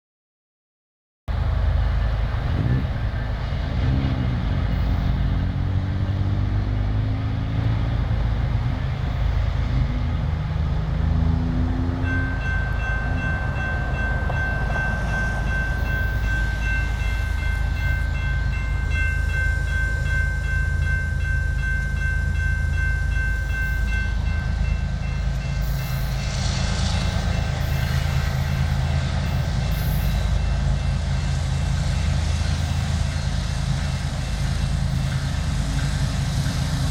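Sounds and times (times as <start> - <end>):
locomotive bell ringing: 11.4 - 36.9.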